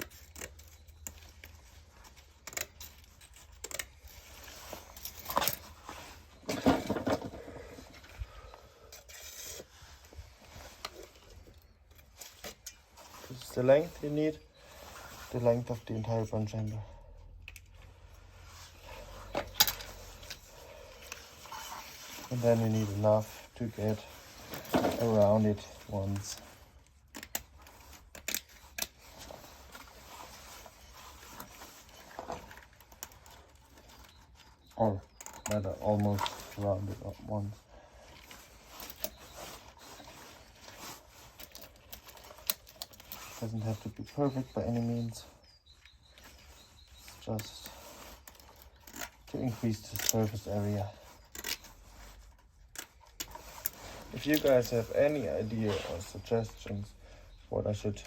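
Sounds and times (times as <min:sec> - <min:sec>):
small clicks and rubs: 0:00.0 - 0:06.3, 0:17.4 - 0:56.8
wire mesh rustling and scraping: 0:17.8 - 0:34.6, 0:38.1 - 0:45.2, 0:46.1 - 0:56.5.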